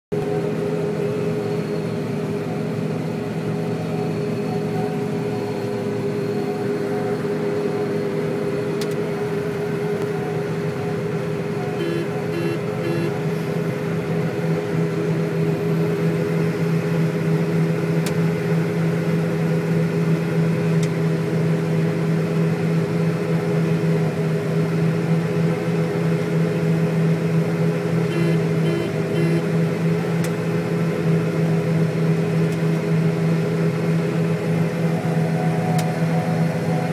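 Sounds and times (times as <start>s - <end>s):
combine harvester droning: 0.1s - 36.9s
short pitched tones: 11.8s - 13.2s.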